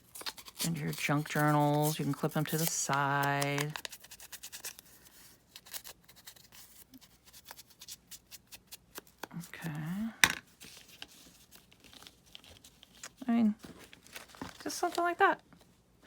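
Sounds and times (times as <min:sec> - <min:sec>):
paper rustling: 0:00.0 - 0:09.7, 0:10.5 - 0:15.7.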